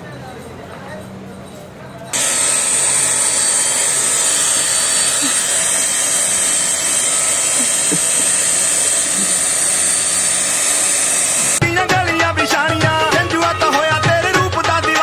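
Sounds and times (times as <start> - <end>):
electric air blower running: 2.2 - 11.6.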